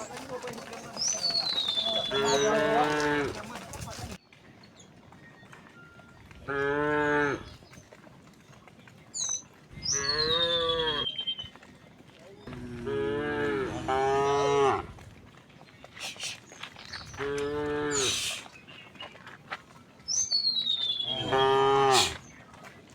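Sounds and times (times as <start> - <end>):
cows mooing: 1.7 - 3.6, 6.5 - 7.5, 12.5 - 15.0, 17.2 - 18.3, 21.0 - 22.2.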